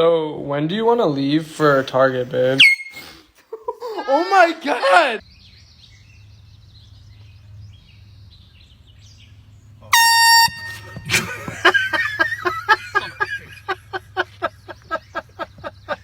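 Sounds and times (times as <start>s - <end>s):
air horn blast: 9.9s - 11.3s.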